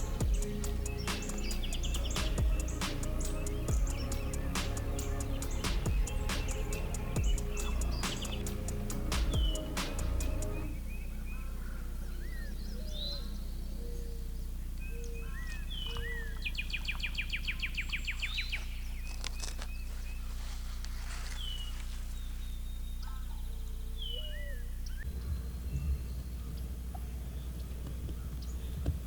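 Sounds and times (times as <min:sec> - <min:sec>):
steady low hum: 0:00.0 - 0:19.1, 0:19.8 - 0:29.0
bird trill: 0:00.0 - 0:20.3, 0:21.4 - 0:28.9
songbirds calling and singing: 0:00.0 - 0:29.0.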